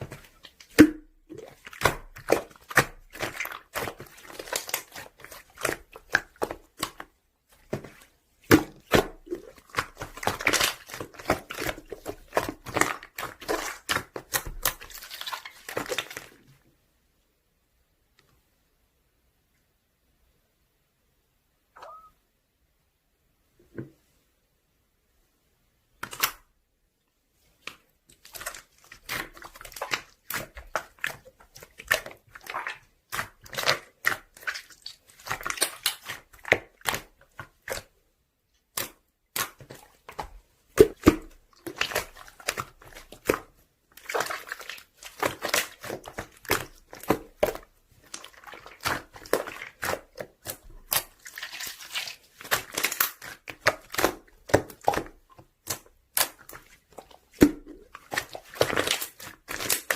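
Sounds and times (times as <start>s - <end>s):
slime squishing and popping: 28.4s - 37.9s, 38.7s - 59.9s.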